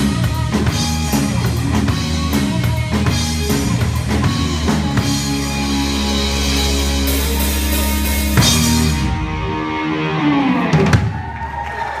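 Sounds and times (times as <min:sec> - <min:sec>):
rock band sustained chord: 0:00.0 - 0:11.2.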